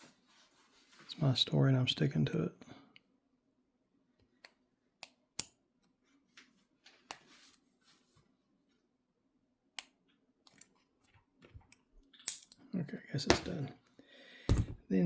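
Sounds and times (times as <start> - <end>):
small metallic clicks: 11.7 - 12.6.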